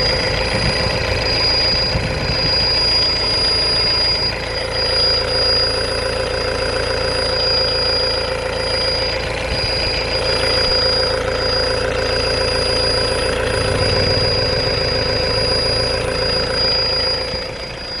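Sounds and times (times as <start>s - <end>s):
engine idling: 0.0s - 18.0s
thin high-pitched tone: 7.0s - 18.0s.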